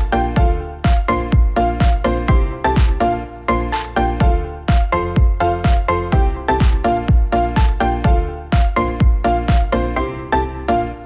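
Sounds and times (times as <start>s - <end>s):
upbeat electronic music: 0.0s - 11.0s.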